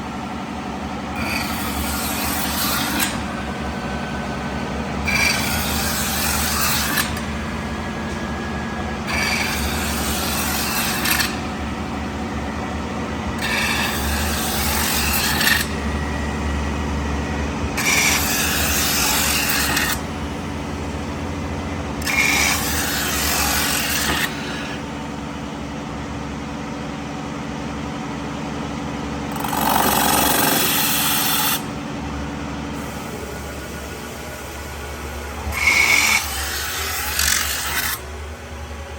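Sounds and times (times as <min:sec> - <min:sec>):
lathe humming: 0:00.3 - 0:26.3, 0:29.0 - 0:38.9
roller rasping on sheet metal: 0:01.2 - 0:04.2, 0:05.0 - 0:07.3, 0:09.0 - 0:11.6, 0:13.4 - 0:15.8, 0:17.8 - 0:20.1, 0:22.0 - 0:24.9, 0:29.3 - 0:31.7.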